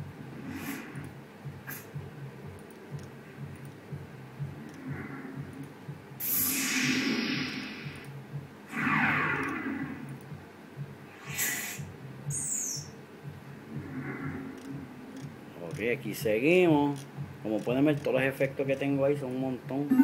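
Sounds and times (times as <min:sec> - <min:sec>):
faint low rhythmic pulsing: 0:00.0 - 0:20.0
falling sweeps: 0:06.2 - 0:08.0
loud hissing burst: 0:06.2 - 0:08.0, 0:11.2 - 0:11.9.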